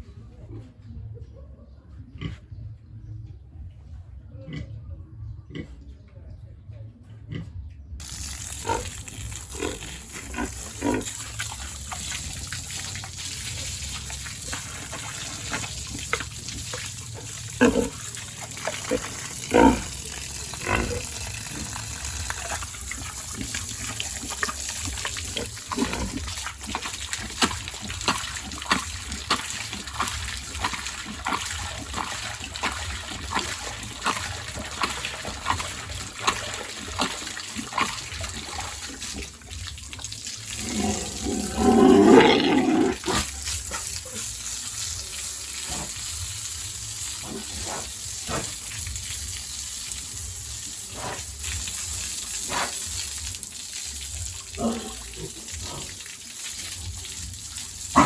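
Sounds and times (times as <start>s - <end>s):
pigs grunting: 4.3s - 6.0s, 7.2s - 39.5s, 40.4s - 44.4s, 47.2s - 48.8s, 54.4s - 56.2s.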